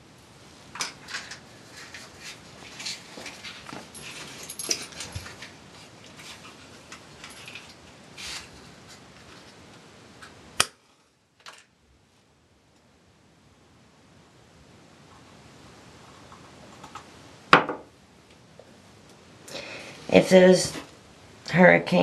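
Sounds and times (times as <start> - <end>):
handling clicks and rustles: 0.7 - 10.4.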